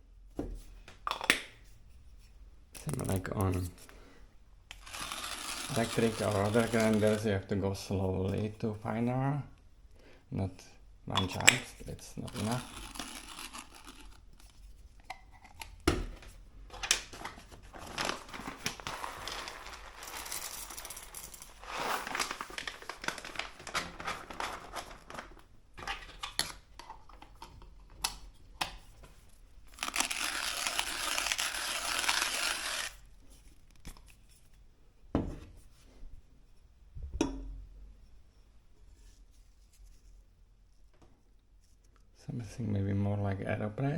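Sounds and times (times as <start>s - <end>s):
hand coffee grinder crunching beans: 4.7s - 7.3s, 12.2s - 14.5s, 17.7s - 26.4s, 29.7s - 33.0s.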